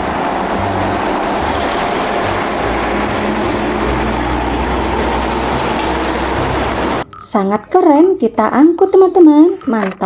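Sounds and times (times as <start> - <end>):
rumbling mechanical noise: 0.0 - 7.0.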